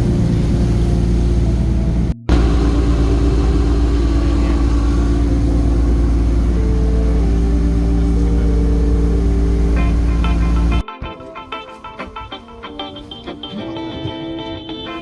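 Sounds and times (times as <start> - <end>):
motor boat engine rumbling: 0.0 - 10.8.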